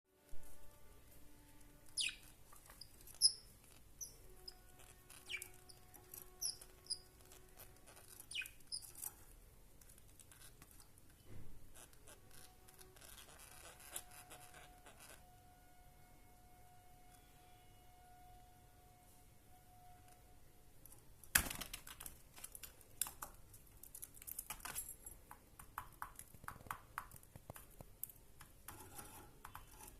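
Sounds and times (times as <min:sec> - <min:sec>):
budgerigars chirping: 0:02.0 - 0:02.3, 0:05.2 - 0:05.8, 0:08.3 - 0:08.9.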